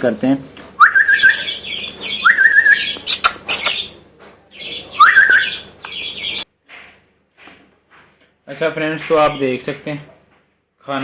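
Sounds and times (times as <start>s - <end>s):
person whistling: 0.8s - 1.4s
young parrots squawking: 0.8s - 4.0s, 4.6s - 6.4s.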